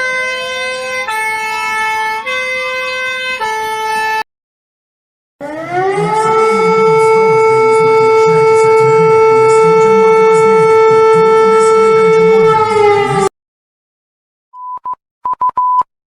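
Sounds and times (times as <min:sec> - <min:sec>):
warning siren steady tone: 0:00.0 - 0:04.2, 0:05.4 - 0:13.3.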